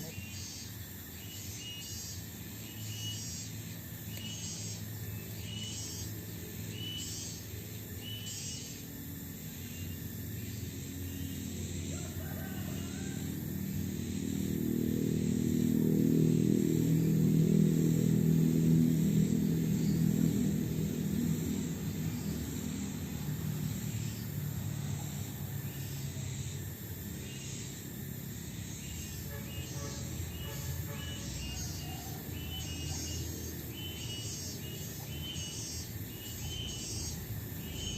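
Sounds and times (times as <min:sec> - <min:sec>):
vehicle passing: 0:10.3 - 0:37.9.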